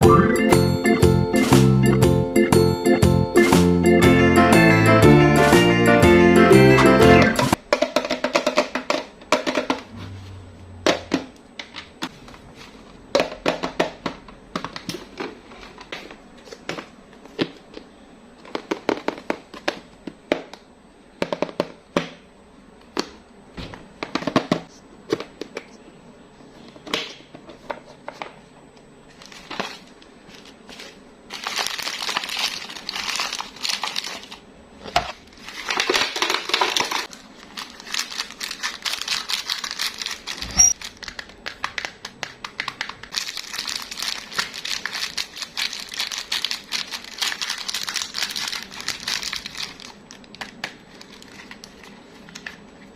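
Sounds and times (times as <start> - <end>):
wrapper crinkling: 29.2 - 34.4, 35.0 - 52.5
plastic wrappers clicking: 31.3 - 34.4, 35.0 - 52.5.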